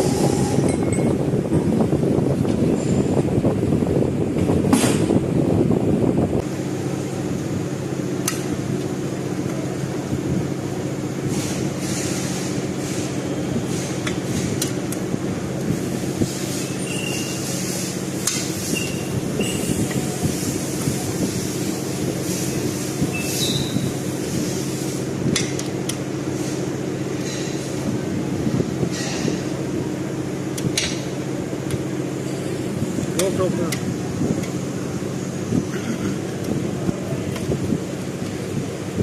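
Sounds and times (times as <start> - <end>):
steady mechanical hum: 0.0 - 39.0
short high squeals: 16.6 - 17.5, 23.1 - 23.9.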